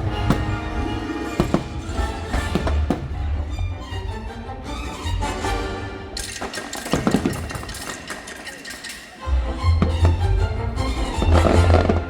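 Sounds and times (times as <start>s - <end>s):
fireworks booming: 0.0s - 3.4s, 9.8s - 12.0s
sharp cracks: 6.2s - 9.2s
loud soundtrack music: 9.2s - 12.0s.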